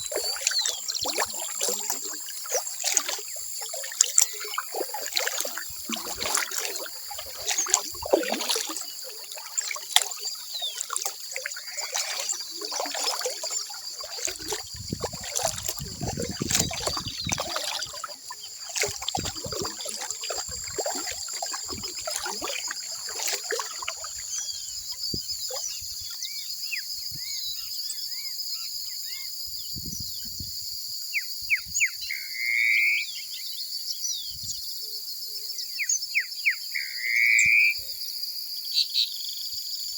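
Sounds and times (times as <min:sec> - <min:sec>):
birds chirping: 0:00.0 - 0:25.8
water dripping and splashing: 0:00.0 - 0:25.8
insects trilling: 0:00.0 - 0:27.4.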